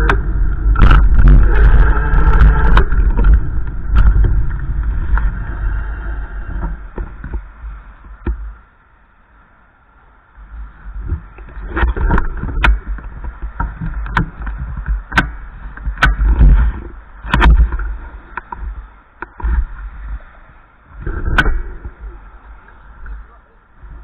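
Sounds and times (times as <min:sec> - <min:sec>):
sharp clicks and knocks: 0:00.0 - 0:05.3, 0:11.1 - 0:19.8, 0:21.0 - 0:22.1
wind buffeting microphone: 0:00.0 - 0:08.7, 0:09.8 - 0:24.0.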